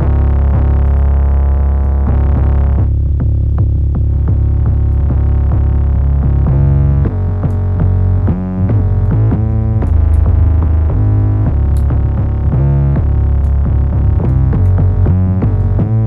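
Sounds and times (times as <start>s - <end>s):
distorted synth bass notes: 0.0s - 16.0s.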